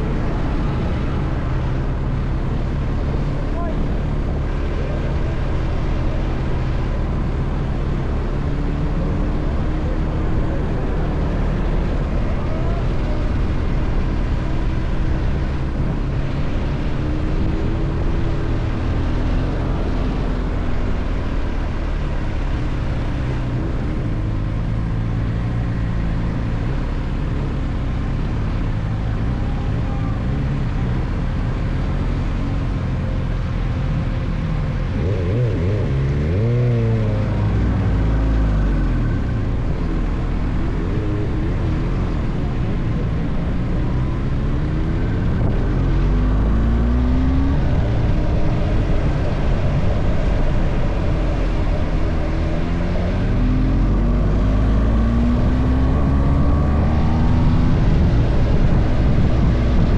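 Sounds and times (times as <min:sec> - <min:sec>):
road noise: 0:00.0 - 0:59.9
car engine running: 0:37.3 - 0:59.9.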